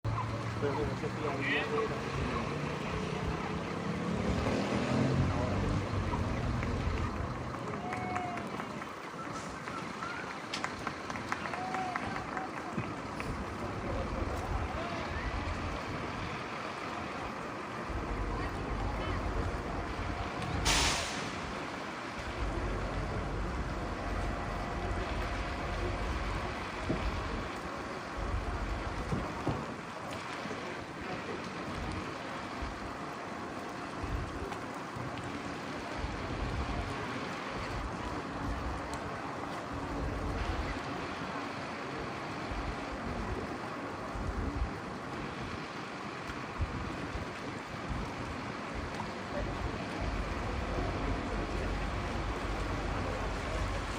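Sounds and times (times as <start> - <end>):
steady background noise: 0.0 - 53.9
water washing: 0.0 - 53.9
wind: 0.0 - 53.9
short loud hiss: 20.6 - 21.5.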